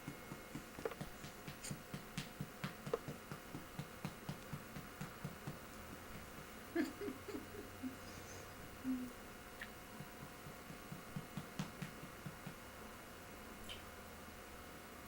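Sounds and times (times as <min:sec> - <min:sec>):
patting baby's back: 0:00.0 - 0:09.0, 0:09.6 - 0:12.6.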